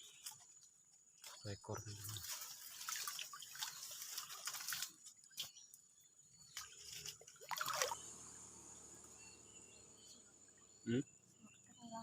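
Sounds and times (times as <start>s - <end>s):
water splashing and dripping: 1.2s - 8.1s.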